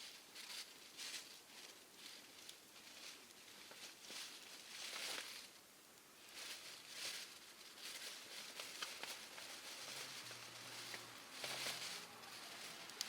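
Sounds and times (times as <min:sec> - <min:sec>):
soft hiss of fire: 0:00.0 - 0:13.0
wood fire crackling and popping: 0:10.8 - 0:13.0.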